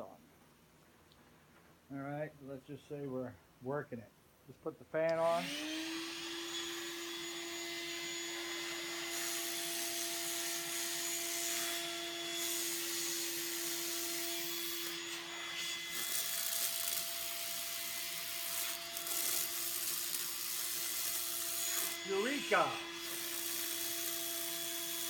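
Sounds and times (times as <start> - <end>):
spark gap crackling buzz: 12.4 - 25.0.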